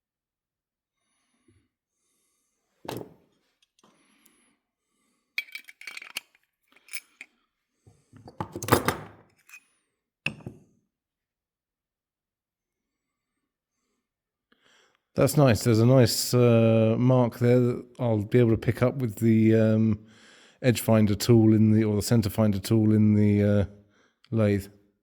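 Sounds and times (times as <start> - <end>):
metal parts clinking: 5.4 - 7.3, 8.5 - 9.6.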